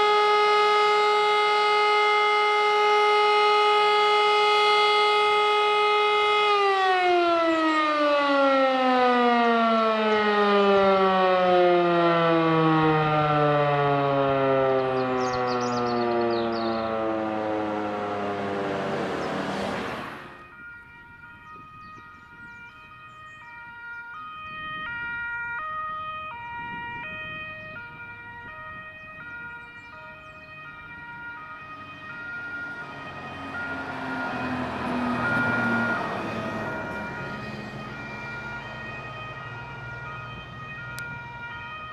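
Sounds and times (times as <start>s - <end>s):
fire engine two-tone horn: 0.0s - 20.6s, 25.6s - 41.9s
civil defence siren winding down: 0.0s - 41.9s
truck engine: 13.8s - 20.5s, 31.4s - 41.6s.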